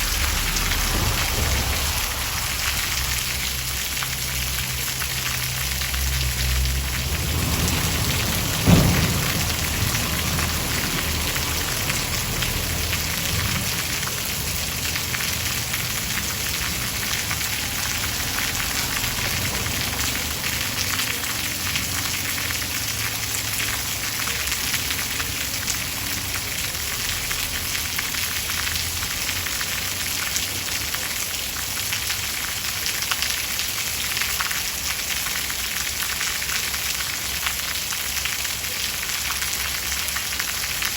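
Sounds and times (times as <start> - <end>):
thunder rumble and crack: 0.0 - 22.0
steady rain: 0.0 - 40.9.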